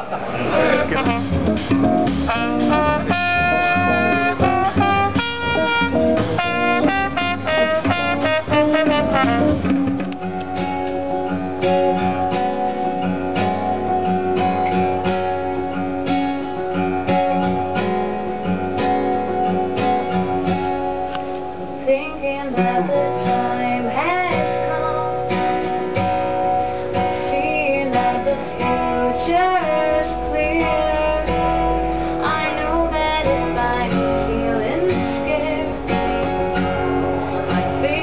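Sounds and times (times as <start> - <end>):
acoustic guitar picked notes: 0.0 - 38.0
acoustic guitar strummed chords: 0.0 - 38.0.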